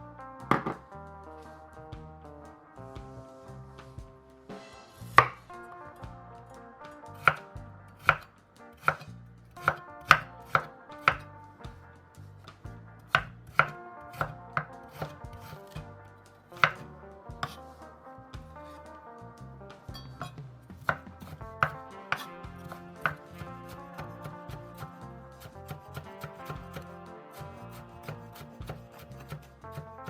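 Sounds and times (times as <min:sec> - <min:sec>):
soft background music: 0:00.0 - 0:30.0
knife chopping on cutting board: 0:07.2 - 0:07.4, 0:08.0 - 0:08.2, 0:08.8 - 0:11.3, 0:13.1 - 0:14.3, 0:14.9 - 0:15.8, 0:16.6 - 0:16.8, 0:20.2 - 0:27.4, 0:28.0 - 0:29.9.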